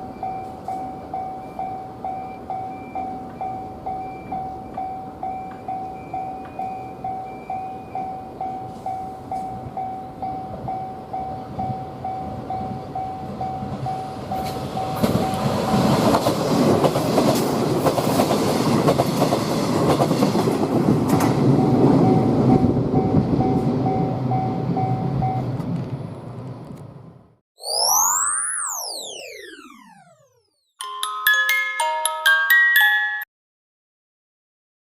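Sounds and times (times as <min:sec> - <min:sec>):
level crossing alarm bell: 0:00.0 - 0:15.7
electric train passing: 0:00.0 - 0:27.1.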